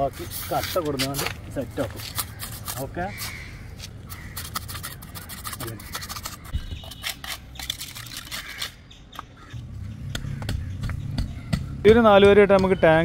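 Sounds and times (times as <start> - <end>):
trowel working mortar: 0.2 - 8.8.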